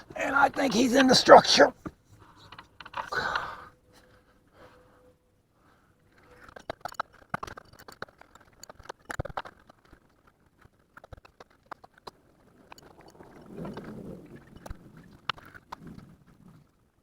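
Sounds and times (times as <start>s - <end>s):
small clicks and light knocks: 6.1s - 13.9s.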